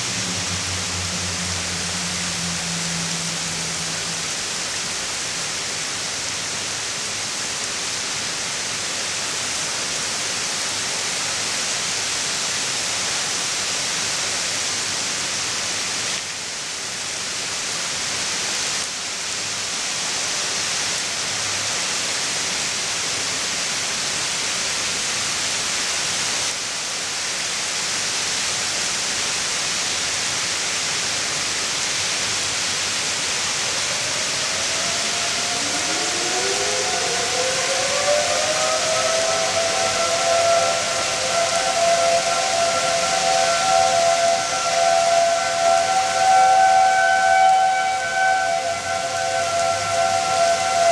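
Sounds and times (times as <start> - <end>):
warning siren winding up: 0.0 - 5.2, 33.2 - 50.9
heavy rain: 0.0 - 50.9.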